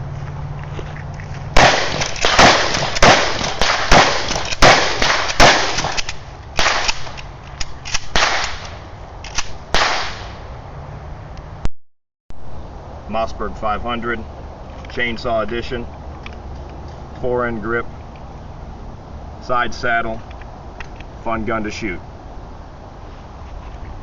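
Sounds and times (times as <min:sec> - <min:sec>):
gunshots: 0:01.6 - 0:07.2, 0:07.9 - 0:08.8, 0:09.4 - 0:10.4.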